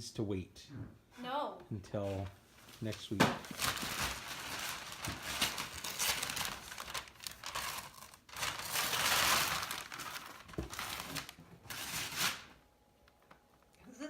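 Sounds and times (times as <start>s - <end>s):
wrapping paper crinkling and tearing: 2.1s - 12.6s.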